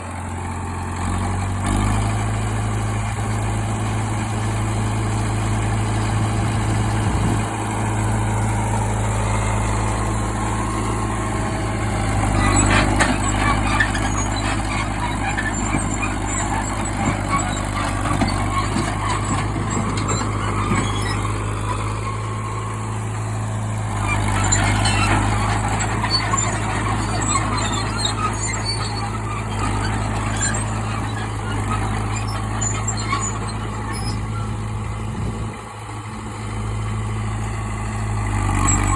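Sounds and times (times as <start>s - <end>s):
bulldozer engine running: 0.0s - 38.9s
clanking and scraping: 11.8s - 22.3s, 24.0s - 35.3s.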